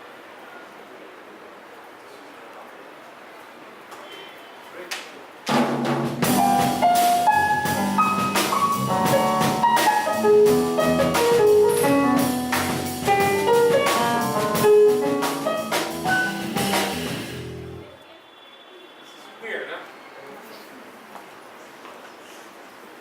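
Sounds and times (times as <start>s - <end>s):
jazz piano trio playing: 5.5s - 17.9s.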